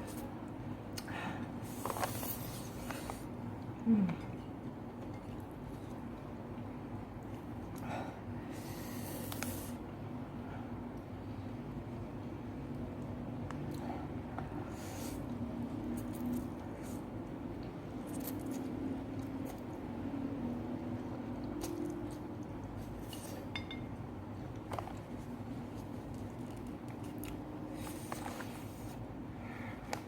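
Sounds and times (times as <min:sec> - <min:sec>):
steady low hum: 0:00.0 - 0:30.0
person chewing: 0:18.0 - 0:19.8.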